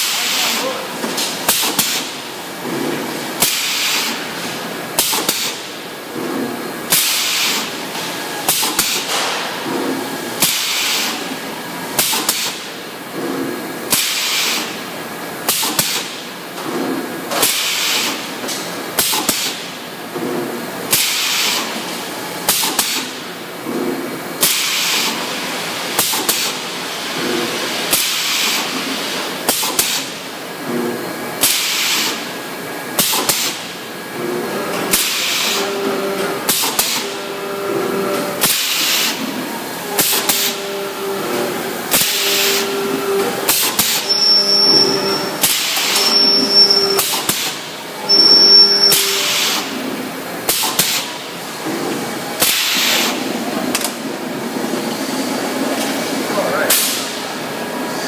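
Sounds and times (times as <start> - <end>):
welding machine hissing: 6.9 - 12.8, 34.9 - 35.7, 38.0 - 51.4
welding machine clacking: 8.4 - 9.8.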